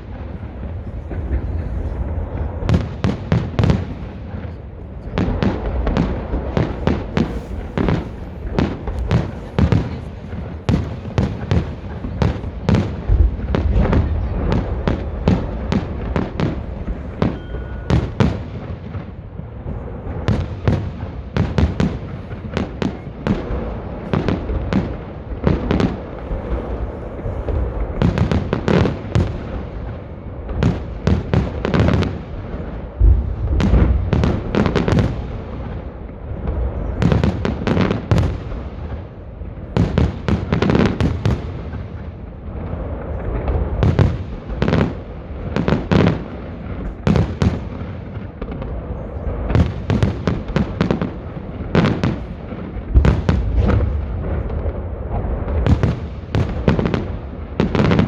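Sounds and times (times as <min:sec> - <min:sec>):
fireworks bangs: 0:00.0 - 0:58.0
rolling rumble of echoes: 0:00.0 - 0:58.0.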